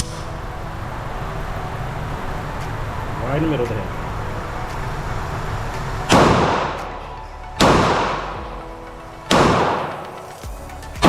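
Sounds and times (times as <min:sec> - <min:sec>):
pistol shots with echo: 0:06.1 - 0:06.9, 0:07.6 - 0:08.4, 0:09.3 - 0:10.2.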